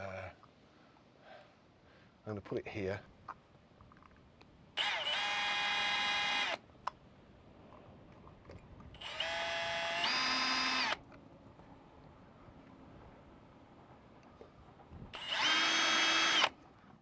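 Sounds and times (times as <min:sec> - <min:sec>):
power drill whining: 0:04.8 - 0:06.6, 0:09.0 - 0:11.0, 0:15.2 - 0:16.5.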